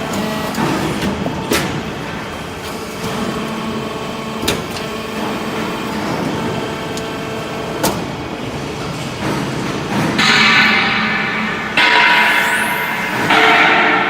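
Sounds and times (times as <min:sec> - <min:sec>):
hydraulic baler humming: 0:00.0 - 0:14.0
sharp metallic knock: 0:10.2 - 0:14.0.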